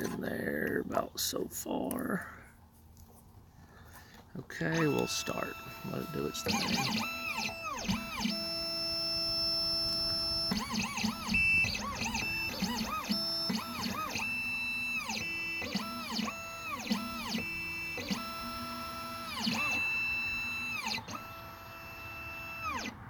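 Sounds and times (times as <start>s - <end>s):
stepper motors whining: 4.0s - 23.0s.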